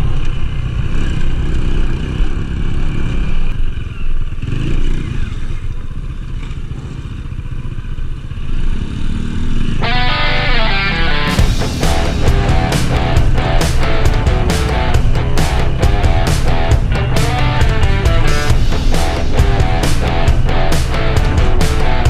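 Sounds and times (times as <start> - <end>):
small motorcycle engine: 0.0 - 22.0
plucked guitar music: 9.8 - 22.0.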